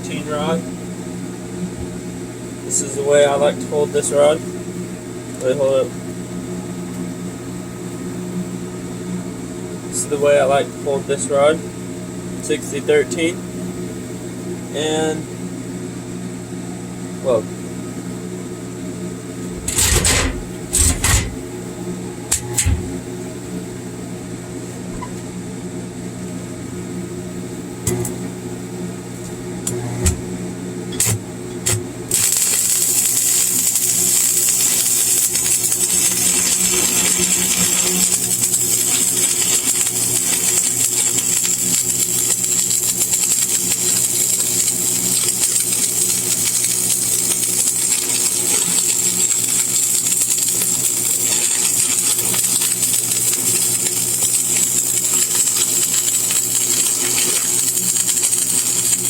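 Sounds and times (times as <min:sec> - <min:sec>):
welding machine hum: 0:18.9 - 0:24.2, 0:26.9 - 0:59.0
welding arc crackling sizzle: 0:19.4 - 0:21.6, 0:27.8 - 0:59.0.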